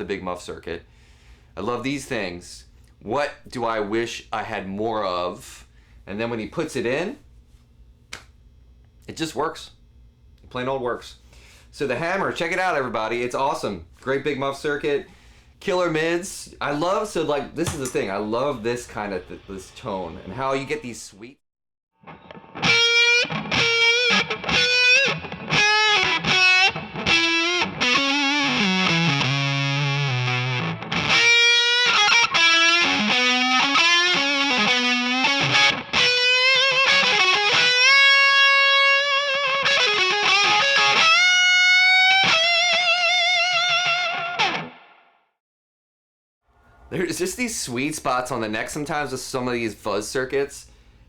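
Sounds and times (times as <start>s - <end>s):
fuzz electric guitar lead: 22.0s - 45.1s.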